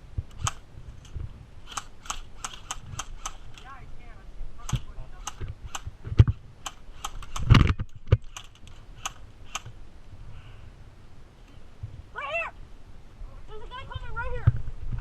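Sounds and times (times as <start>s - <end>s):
airsoft gun shots: 1.7s - 3.6s, 6.6s - 7.7s.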